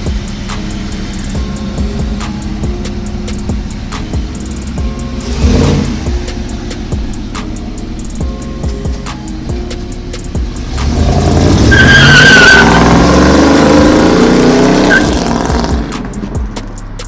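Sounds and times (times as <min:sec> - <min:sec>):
car engine revving: 0:00.0 - 0:17.0
tire squeal: 0:10.1 - 0:15.6.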